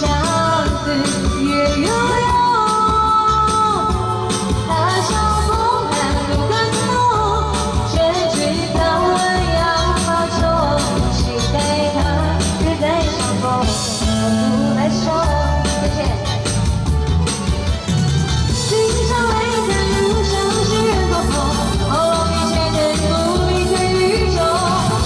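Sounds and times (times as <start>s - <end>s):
pop song with singing: 0.0s - 25.0s.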